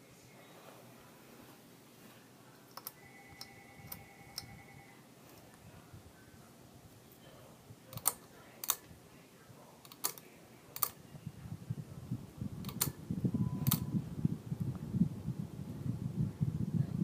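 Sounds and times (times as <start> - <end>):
ceiling fan rumbling: 0.0 - 17.0
sharp clicks: 2.7 - 4.5, 7.9 - 8.9, 9.8 - 11.0, 12.6 - 13.0, 13.6 - 13.9.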